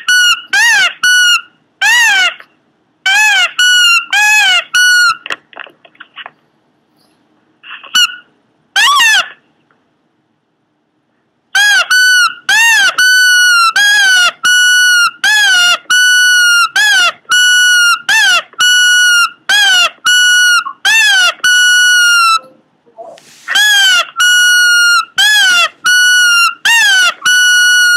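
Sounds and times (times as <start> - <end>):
dog yelping high-pitched: 0.0 - 2.4, 3.1 - 5.2, 7.9 - 9.4, 11.6 - 22.5, 23.5 - 27.9.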